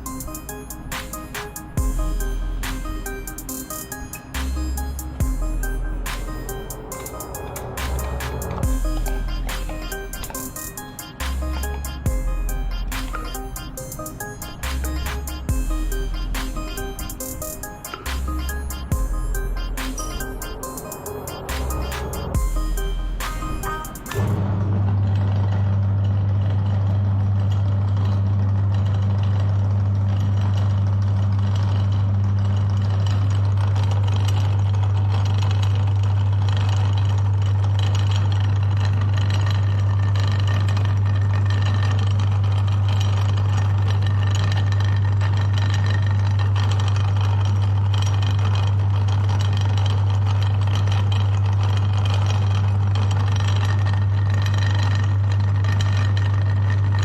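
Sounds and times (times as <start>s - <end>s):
meat grinder motor humming: 20.4s - 57.0s.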